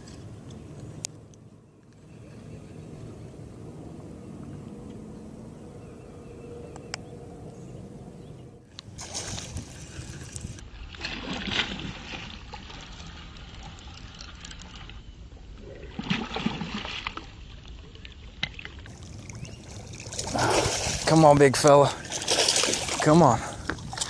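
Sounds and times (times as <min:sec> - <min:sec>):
water splashing and sloshing: 0:08.7 - 0:24.0.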